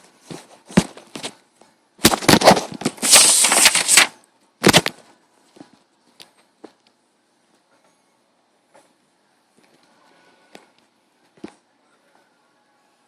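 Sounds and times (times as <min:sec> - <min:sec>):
harsh rasping noise: 0:02.4 - 0:04.1.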